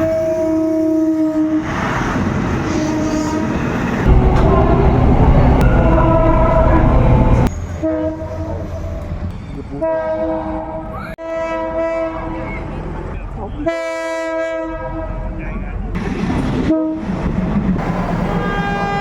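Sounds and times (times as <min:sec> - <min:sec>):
train horn blasts: 0:00.0 - 0:01.6, 0:02.7 - 0:09.0, 0:09.7 - 0:12.5, 0:13.6 - 0:15.4, 0:16.7 - 0:17.1, 0:18.2 - 0:19.0
train rumble: 0:00.0 - 0:19.0.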